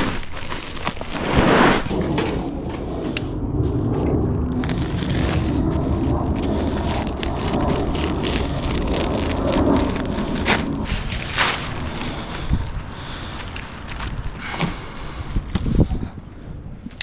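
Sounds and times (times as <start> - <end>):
synthetic grass roll rustling: 0.0 - 14.4.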